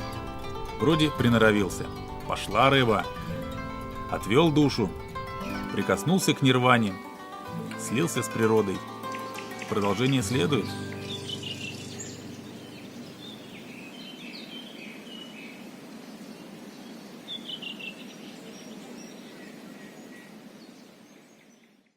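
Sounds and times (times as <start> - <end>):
small birds chirping: 7.7 - 21.9.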